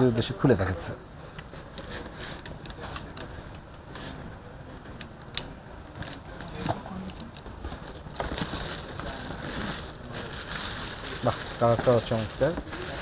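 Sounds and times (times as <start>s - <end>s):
packaging rustling: 7.4s - 13.0s.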